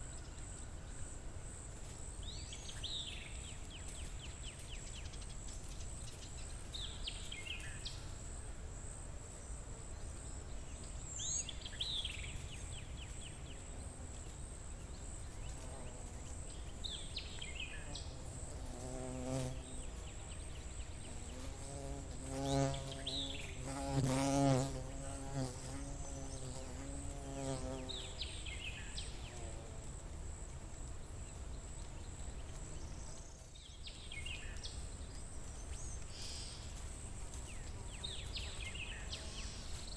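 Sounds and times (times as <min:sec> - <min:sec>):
flying insect buzzing: 0:17.7 - 0:30.0.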